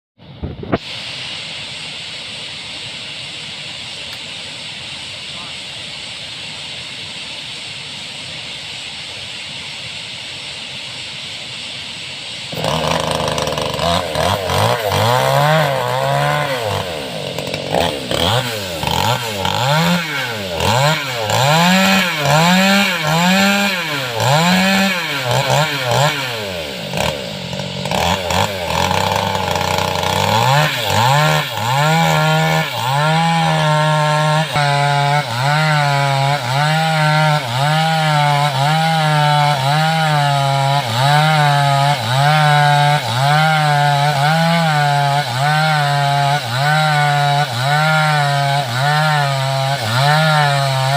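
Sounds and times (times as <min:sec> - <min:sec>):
chainsaw cutting wood: 0:12.5 - 0:50.9.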